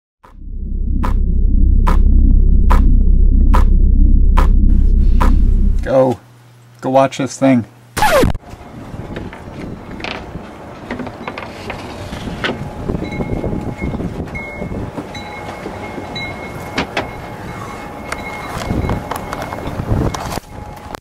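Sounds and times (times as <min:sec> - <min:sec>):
sharp knocks: 0:04.3 - 0:05.6
wind buffeting microphone: 0:12.2 - 0:15.1, 0:18.6 - 0:20.9.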